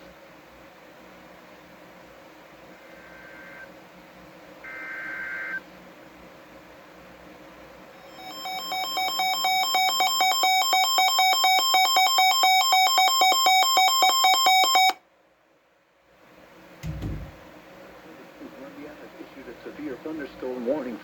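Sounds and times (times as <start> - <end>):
two-pitch electronic alarm beeping: 8.0 - 15.0
short low thump: 16.8 - 17.4.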